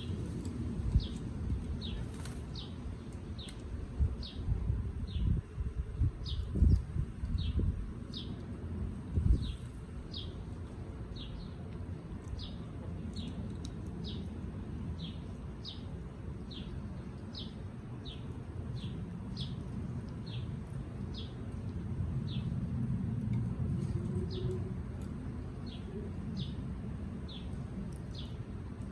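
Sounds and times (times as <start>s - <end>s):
low steady rumble: 0.0s - 28.9s
bird chirping: 20.2s - 20.5s.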